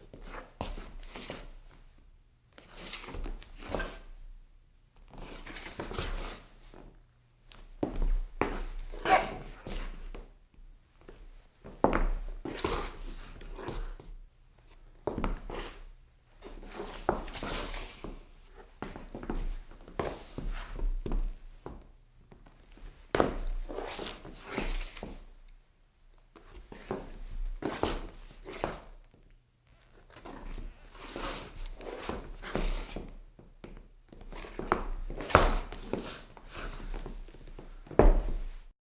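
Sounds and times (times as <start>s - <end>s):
shoes scuffing on wooden floor: 7.8s - 10.3s, 11.1s - 15.9s, 16.5s - 21.8s, 26.4s - 28.9s, 30.2s - 38.7s
footsteps on wooden floor: 33.7s - 38.7s.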